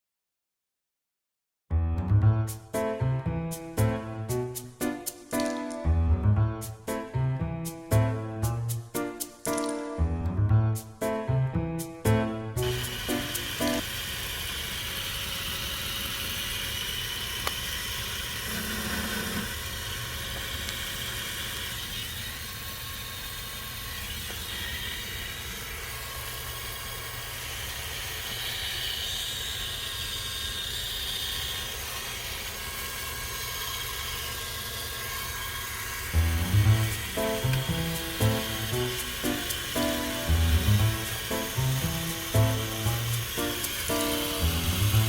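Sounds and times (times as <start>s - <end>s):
small electric motor humming: 12.5s - 45.0s.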